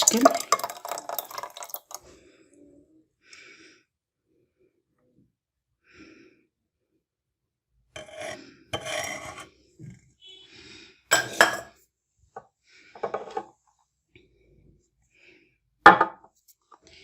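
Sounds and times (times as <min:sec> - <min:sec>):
kitchenware scraping and rubbing: 0:08.0 - 0:09.6, 0:11.1 - 0:11.8, 0:13.0 - 0:13.6.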